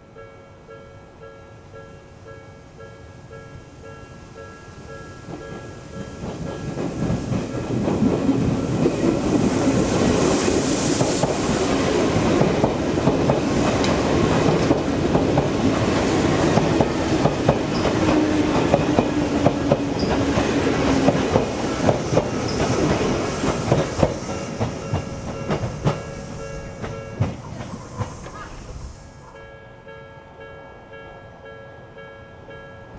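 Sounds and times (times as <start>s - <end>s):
crossing warning bell ringing: 0.0s - 9.2s, 11.9s - 23.2s, 24.2s - 27.5s, 29.1s - 32.9s
train wheels clattering: 5.2s - 29.0s.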